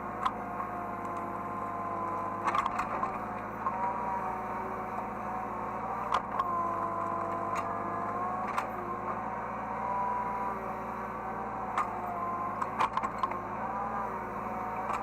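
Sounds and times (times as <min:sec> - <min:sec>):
excavator engine hum: 0:00.0 - 0:15.0
hydraulic whine: 0:00.0 - 0:15.0.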